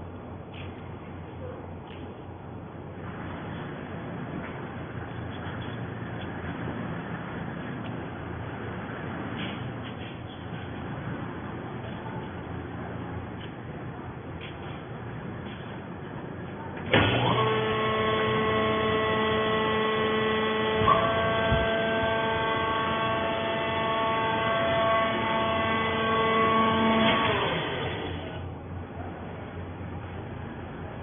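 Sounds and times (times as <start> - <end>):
hydraulic pump whining hum: 0.0 - 31.0.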